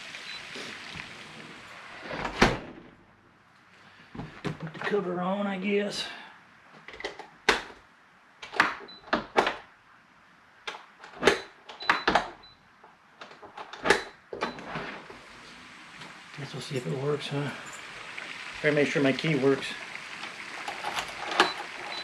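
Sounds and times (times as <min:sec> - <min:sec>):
hard parts clicking and knocking: 0:06.8 - 0:07.8, 0:20.2 - 0:22.0.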